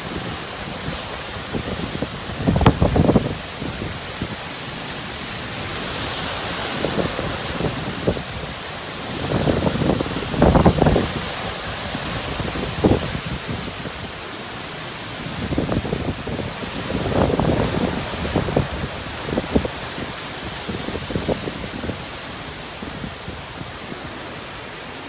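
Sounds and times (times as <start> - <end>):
wind and rain hiss: 0.0 - 25.0
wind buffeting microphone: 0.0 - 25.0.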